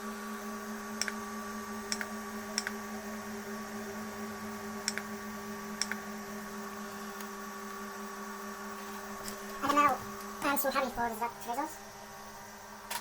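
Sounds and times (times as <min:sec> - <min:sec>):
three d printer humming: 0:00.0 - 0:13.0
sharp ticks: 0:05.8 - 0:06.0.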